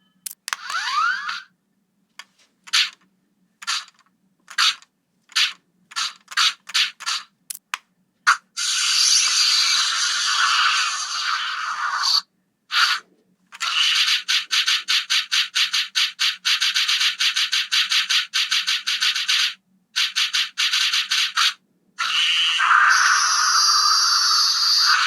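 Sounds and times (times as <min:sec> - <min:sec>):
toy speaker rattling electronic pulses: 0:00.5 - 0:01.5, 0:03.6 - 0:07.3, 0:12.7 - 0:25.0.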